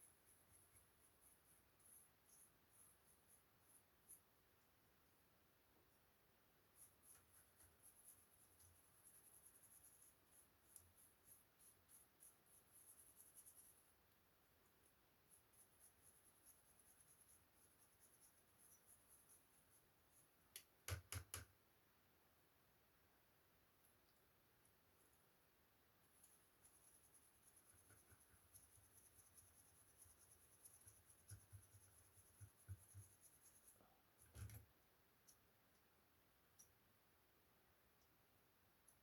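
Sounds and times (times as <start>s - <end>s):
light scratching and ticking: 0.0s - 4.4s, 6.7s - 14.0s, 15.2s - 21.4s, 26.0s - 35.8s.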